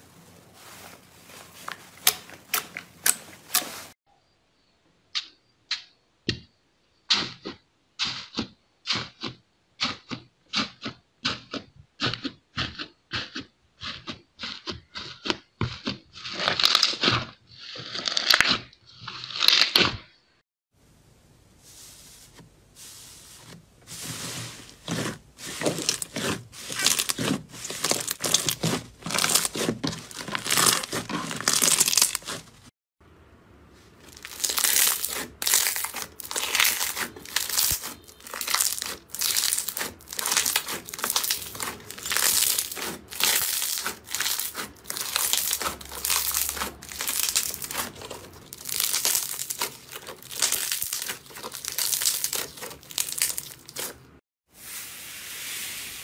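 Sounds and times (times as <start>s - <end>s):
slime squelching and crackling: 0.0s - 4.0s, 21.6s - 32.7s, 33.8s - 54.2s.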